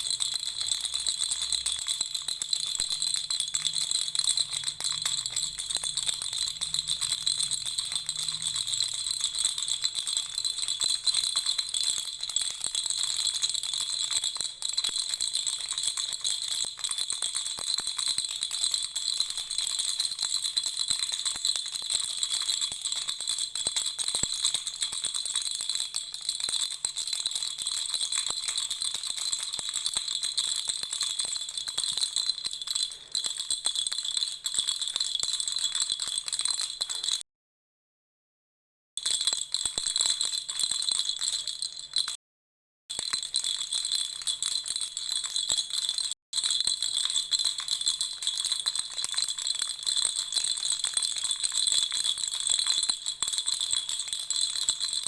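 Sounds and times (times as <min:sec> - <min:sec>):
baby rattle rattling and jingling: 0:00.0 - 0:09.4.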